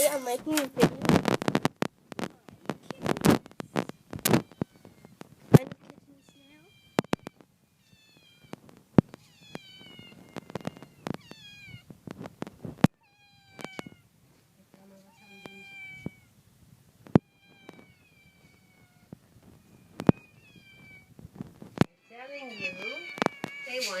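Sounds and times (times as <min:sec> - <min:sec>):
sharp clicks and knocks: 0:00.5 - 0:06.0
kittens mewing: 0:02.2 - 0:11.9, 0:13.0 - 0:14.1, 0:15.1 - 0:16.3, 0:17.1 - 0:21.2, 0:21.8 - 0:24.0.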